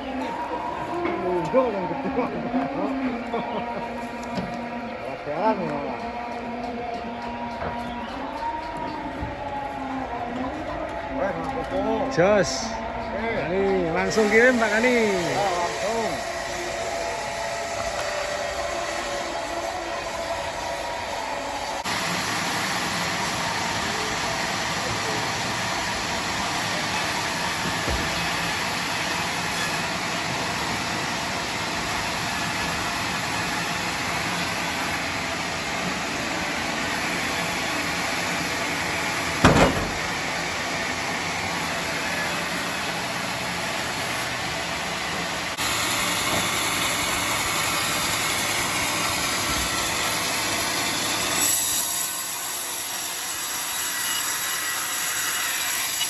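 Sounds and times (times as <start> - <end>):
bandsaw cutting log: 21.8 - 44.5, 45.6 - 56.0.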